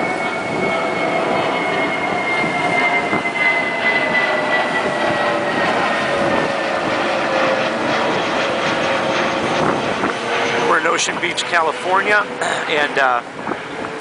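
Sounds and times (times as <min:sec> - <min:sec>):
aircraft engine passing: 0:00.0 - 0:14.0.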